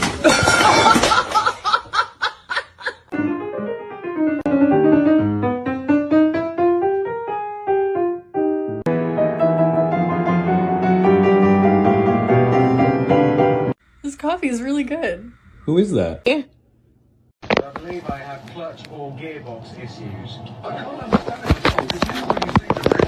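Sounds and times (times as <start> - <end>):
piano music: 3.1 - 13.8.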